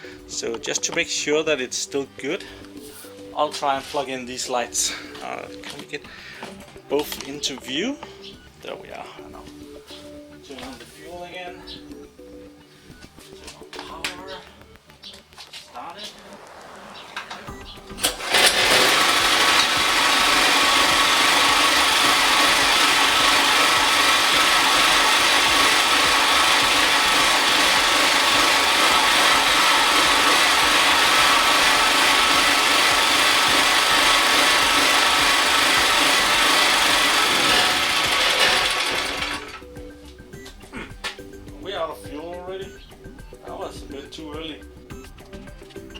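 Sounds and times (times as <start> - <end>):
petrol generator engine running: 17.0 - 39.9.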